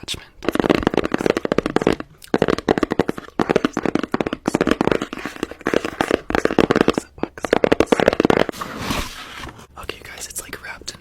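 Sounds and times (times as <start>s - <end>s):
fidget toy clicks and taps: 0.4s - 8.5s.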